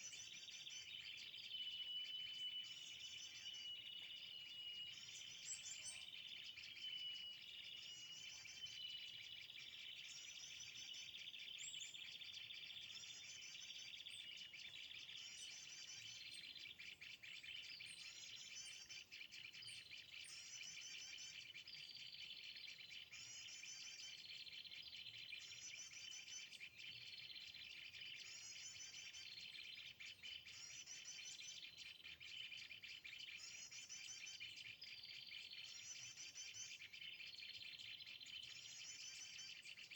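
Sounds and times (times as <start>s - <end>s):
high chirping bird call: 0.0s - 24.3s.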